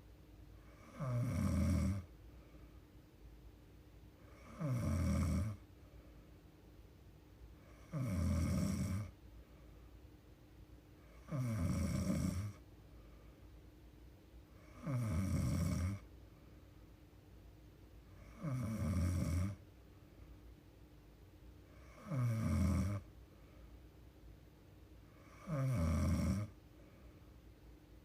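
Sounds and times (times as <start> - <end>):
woman snoring: 0.6 - 2.1, 4.2 - 5.6, 7.6 - 9.1, 11.1 - 12.6, 14.6 - 16.0, 18.2 - 19.6, 21.7 - 23.1, 25.1 - 26.6.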